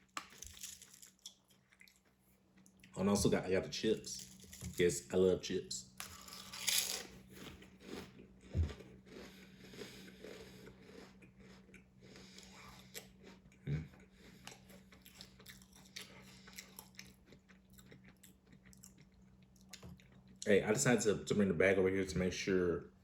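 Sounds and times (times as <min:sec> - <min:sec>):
person crunching potato chips: 0:00.0 - 0:02.8, 0:06.0 - 0:20.4.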